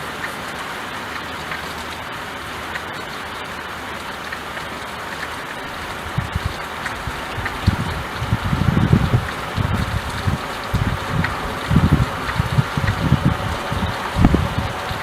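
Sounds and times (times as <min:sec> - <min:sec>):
rain on window glass: 0:00.0 - 0:15.0
low rumbles: 0:05.6 - 0:15.0.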